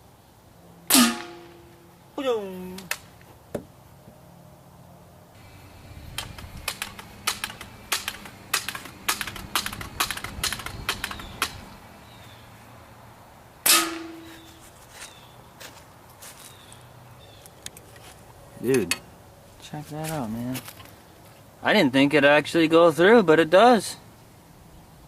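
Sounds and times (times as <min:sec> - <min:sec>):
air rifle firing: 0:00.9 - 0:01.6, 0:06.1 - 0:11.6.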